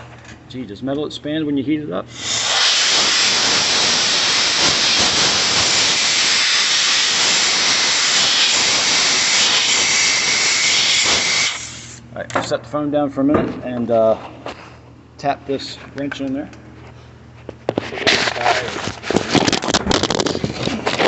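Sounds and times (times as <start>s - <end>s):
welding arc crackling hiss: 2.2s - 12.0s.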